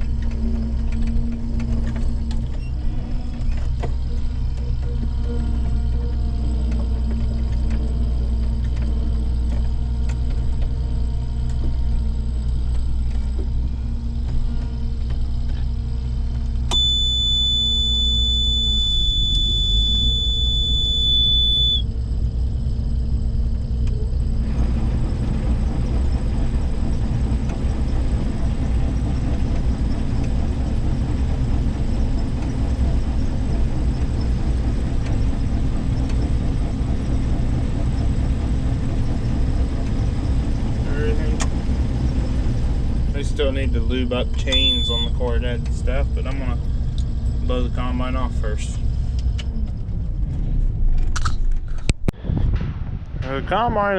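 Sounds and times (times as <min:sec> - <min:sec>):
combine engine running: 0:00.0 - 0:51.9
rushing machine noise: 0:16.2 - 0:49.1
high-pitched warning beep: 0:16.7 - 0:21.9, 0:44.4 - 0:45.3.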